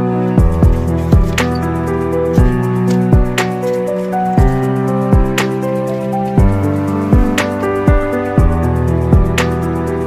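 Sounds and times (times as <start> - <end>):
kick drum beat: 7.2 - 8.6.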